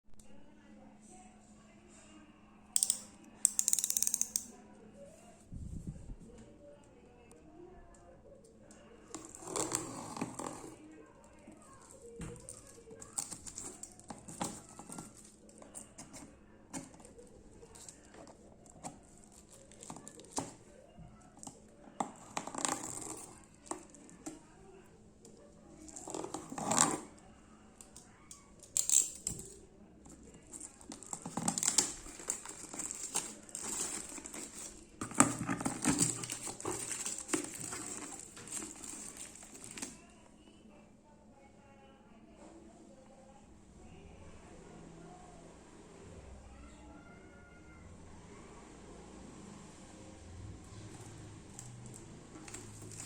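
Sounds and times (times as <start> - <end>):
handling clicks and knocks: 2.8 - 4.5, 11.8 - 20.7, 27.8 - 40.0, 50.9 - 53.0
paper crinkling and rustling: 30.2 - 40.0, 51.0 - 53.0.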